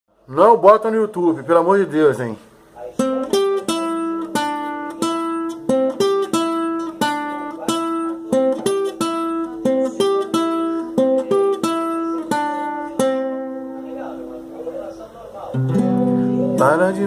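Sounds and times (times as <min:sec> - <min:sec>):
acoustic guitar strumming: 0:03.0 - 0:14.8, 0:15.4 - 0:17.0.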